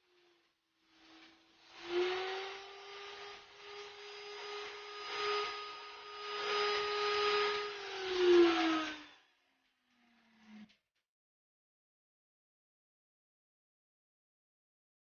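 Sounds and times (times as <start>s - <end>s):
table saw cutting wood: 0.9s - 9.4s.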